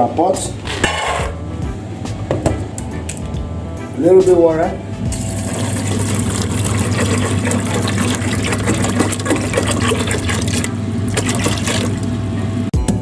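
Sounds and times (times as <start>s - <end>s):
water pouring into a pot: 5.1s - 12.2s.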